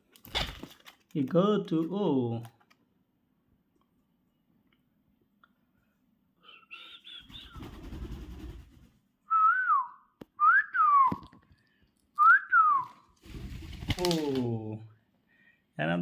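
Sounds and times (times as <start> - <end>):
faint chirps: 6.4 - 7.7
parrot whistling: 6.5 - 7.6.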